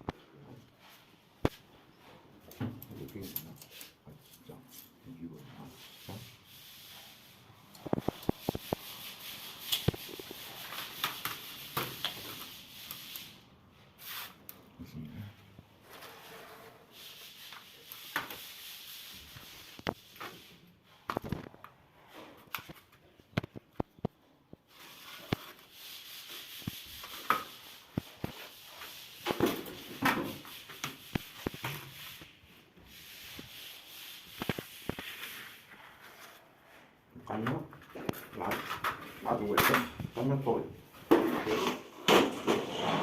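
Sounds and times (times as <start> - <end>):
scratchy rubbing on marble: 3.2 - 13.3, 15.9 - 20.6, 24.7 - 36.8.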